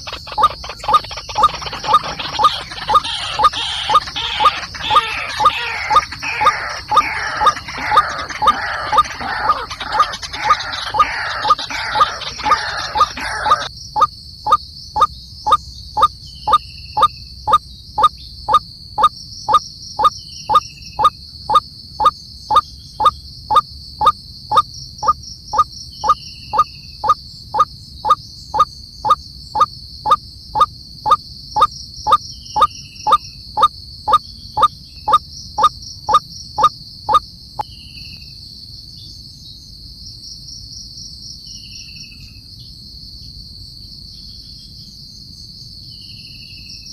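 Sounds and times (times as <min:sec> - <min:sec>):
faint downward chirps: 0:00.0 - 0:23.6, 0:26.0 - 0:28.7, 0:29.6 - 0:31.2, 0:32.1 - 0:34.2
crickets chirping chorus: 0:00.0 - 0:46.9.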